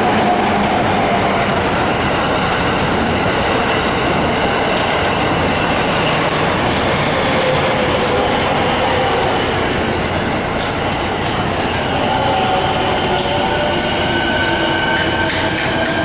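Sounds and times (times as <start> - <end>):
train rumbling past: 0.0 - 16.0
light clicks of train wheels: 3.6 - 16.0.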